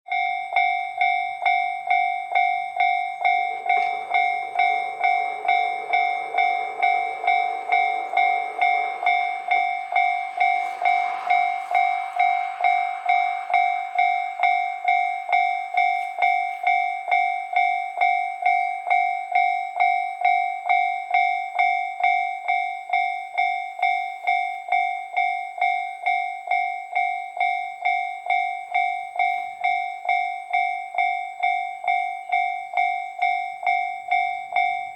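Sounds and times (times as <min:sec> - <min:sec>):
railroad crossing bell ringing: 0:00.1 - 0:34.9
faint low sound: 0:02.3 - 0:17.8.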